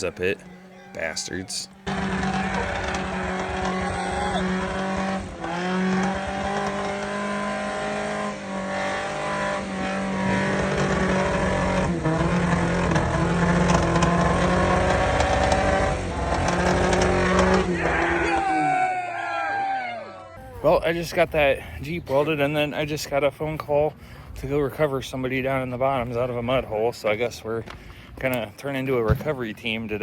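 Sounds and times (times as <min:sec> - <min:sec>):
engine revving under load: 0:00.0 - 0:18.8.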